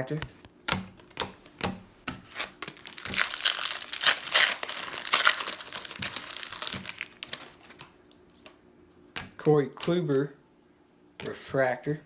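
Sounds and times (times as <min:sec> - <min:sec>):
wrapper crinkling and tearing: 0:02.3 - 0:08.0.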